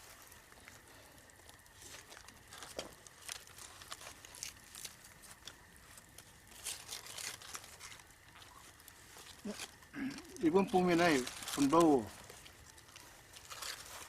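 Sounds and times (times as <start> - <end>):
faint crinkling and rustling: 0.0 - 14.0.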